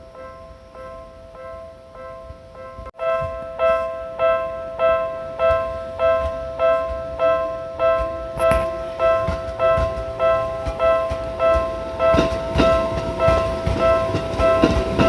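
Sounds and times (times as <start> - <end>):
level crossing warning bell: 0.0 - 15.0.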